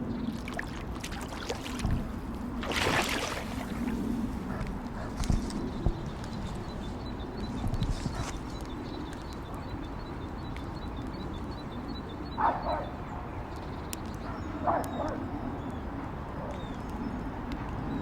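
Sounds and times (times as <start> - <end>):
dog barking: 12.4 - 12.9, 14.3 - 15.2.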